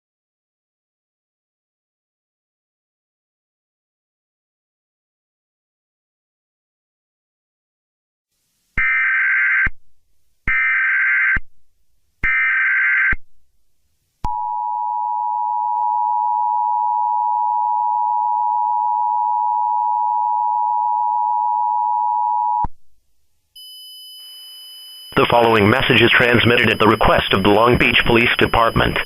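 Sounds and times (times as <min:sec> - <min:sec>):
two-tone attention signal: 0:23.6 - 0:29.0
screeching data bursts: 0:24.2 - 0:29.0.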